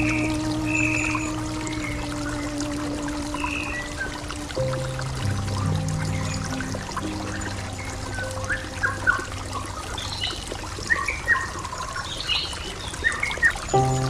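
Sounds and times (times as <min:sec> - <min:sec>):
faint held music notes: 0:00.0 - 0:11.8, 0:13.6 - 0:14.0
small water splashes: 0:00.0 - 0:14.0
water trickling and gurgling: 0:00.0 - 0:14.0.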